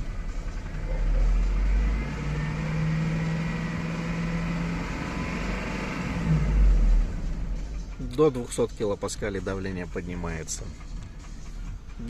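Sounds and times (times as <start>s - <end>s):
engine at raised revs: 0.0s - 8.0s.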